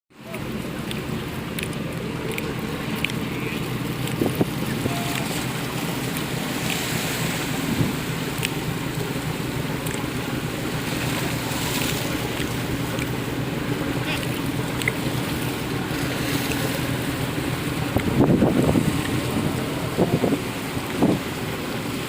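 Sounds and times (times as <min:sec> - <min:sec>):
rushing water: 0:00.1 - 0:22.0
ship engines droning: 0:00.2 - 0:22.0
wind on microphone: 0:15.8 - 0:21.9.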